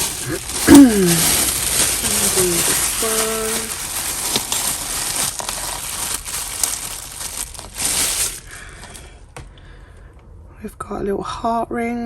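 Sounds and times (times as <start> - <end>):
plastic bag crinkling: 0.0 - 9.2.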